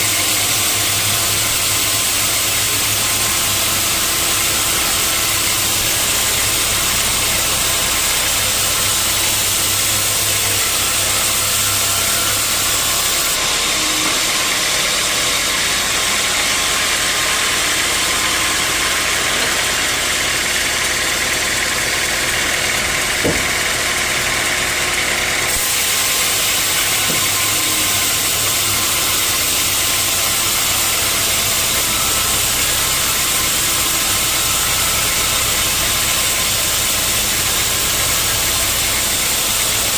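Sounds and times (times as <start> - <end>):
sawmill machinery running: 0.0 - 39.9
sharp knock: 23.2 - 23.6.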